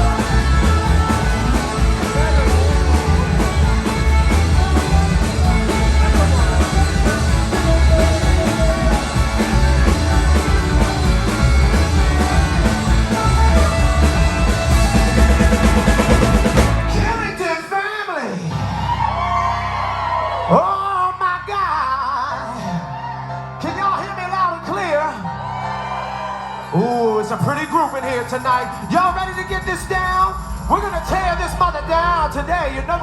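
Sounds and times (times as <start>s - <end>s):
steady drum beat: 0.0s - 17.5s, 28.9s - 33.0s
heavy bass: 0.0s - 17.6s, 18.5s - 22.5s
rock band playing loudly: 0.0s - 17.7s.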